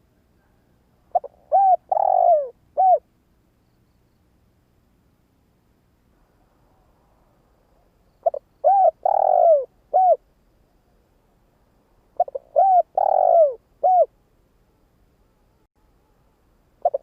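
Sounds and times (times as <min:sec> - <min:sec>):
dove cooing: 0:00.4 - 0:03.1, 0:08.2 - 0:10.2, 0:12.2 - 0:14.1, 0:16.8 - 0:17.0.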